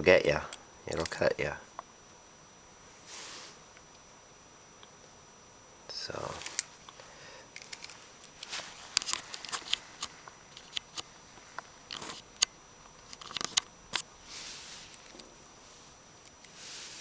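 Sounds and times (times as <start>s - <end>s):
soft rustle: 2.8s - 3.7s, 7.7s - 12.3s, 14.2s - 17.0s.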